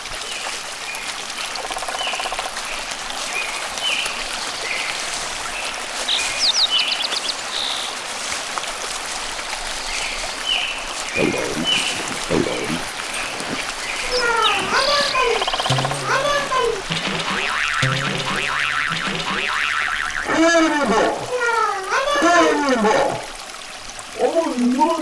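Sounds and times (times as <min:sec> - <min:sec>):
stream water rushing: 0:00.0 - 0:25.0
birds chirping: 0:06.0 - 0:08.0, 0:09.9 - 0:23.3.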